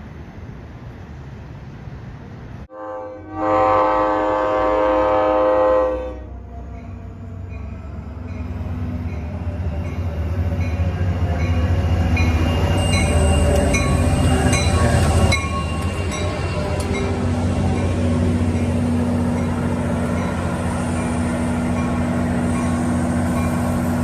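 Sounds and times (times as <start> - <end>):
passing train rumble: 0.0 - 24.0
train horn chord: 2.7 - 6.4
wheels clicking over rail joints: 12.2 - 24.0.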